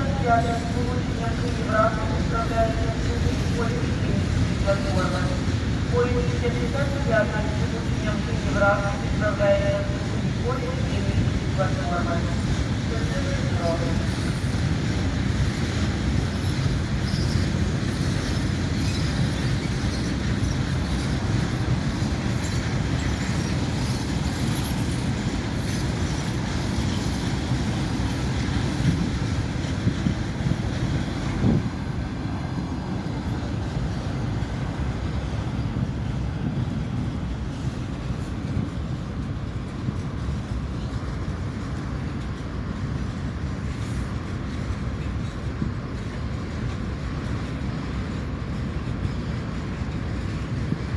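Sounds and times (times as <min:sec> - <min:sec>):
train rolling on rails: 0:00.0 - 0:50.9.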